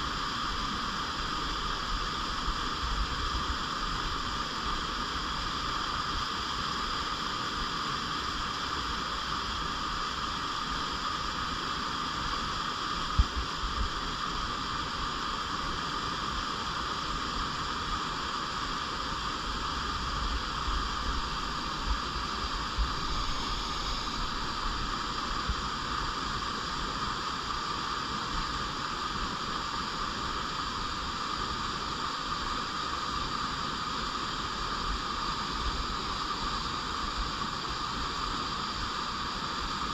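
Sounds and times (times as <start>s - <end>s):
stream flowing over rocks: 12.1s - 39.8s.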